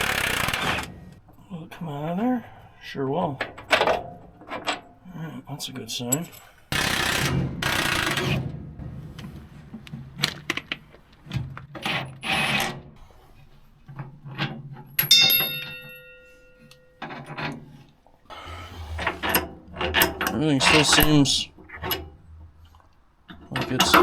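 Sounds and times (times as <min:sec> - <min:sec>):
short noisy bursts: 0:00.0 - 0:00.9
metal tools clicking and clanking: 0:03.3 - 0:05.1, 0:05.7 - 0:08.5, 0:13.8 - 0:24.0.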